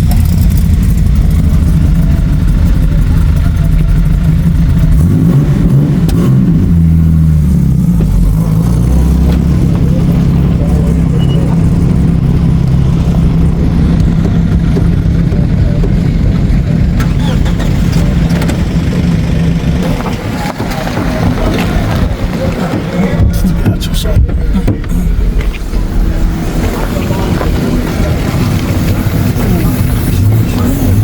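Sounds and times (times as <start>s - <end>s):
engine revving: 0.0s - 31.0s
vehicle engines rumbling: 0.0s - 31.0s.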